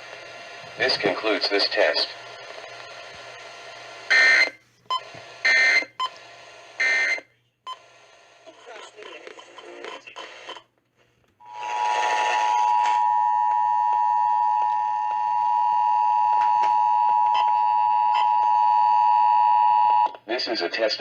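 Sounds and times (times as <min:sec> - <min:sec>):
buzzing data noise: 0:11.4 - 0:14.9
two-tone alert signal: 0:11.4 - 0:18.6.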